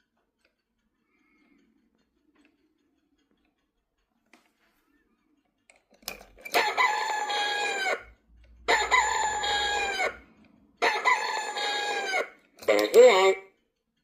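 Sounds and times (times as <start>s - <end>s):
alarm clock rooster crow: 6.4s - 13.4s.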